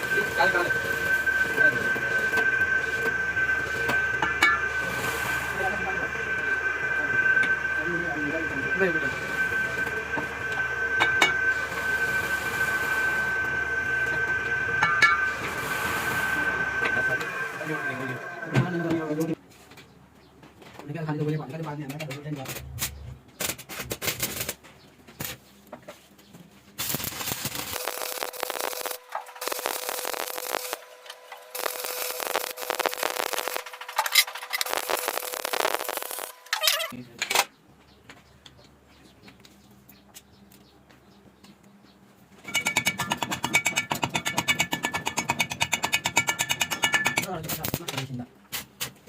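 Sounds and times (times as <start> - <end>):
faint steady hum: 0.0 - 19.4
harsh metal rasping and scraping: 0.0 - 19.4, 26.8 - 36.9, 42.4 - 47.7
machine high whine: 0.0 - 19.4, 22.4 - 23.4, 26.9 - 37.0, 42.4 - 47.7.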